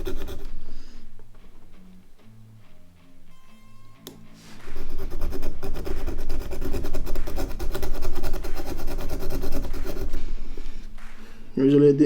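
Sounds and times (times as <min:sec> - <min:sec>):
knife blade rasping on screw: 0:00.0 - 0:00.6, 0:04.6 - 0:10.7.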